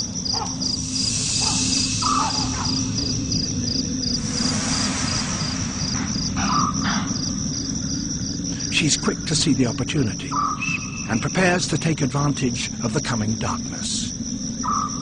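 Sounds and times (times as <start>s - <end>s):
soft rushing swell: 0.0s - 9.2s
crickets chirping: 0.0s - 15.0s
high insect whine: 0.0s - 15.0s.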